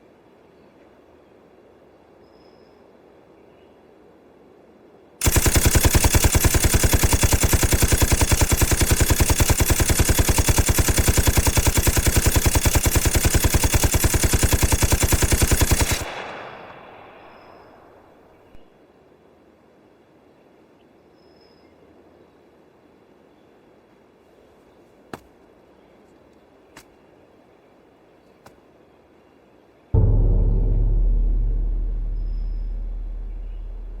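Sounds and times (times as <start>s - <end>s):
machine-gun fire: 5.2s - 17.9s, 30.0s - 34.0s.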